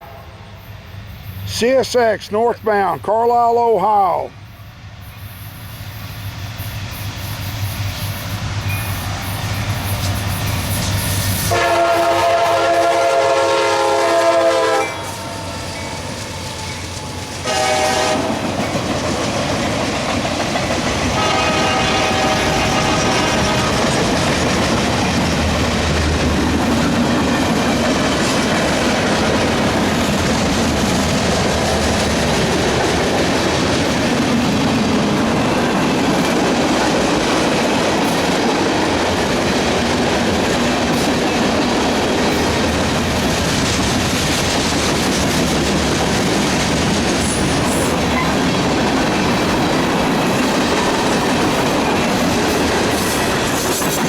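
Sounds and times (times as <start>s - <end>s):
freight train rumbling past: 0.0s - 54.0s.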